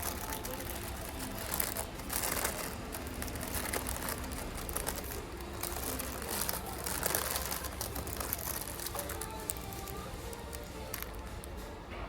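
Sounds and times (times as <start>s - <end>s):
paper rustling: 0.0s - 11.7s.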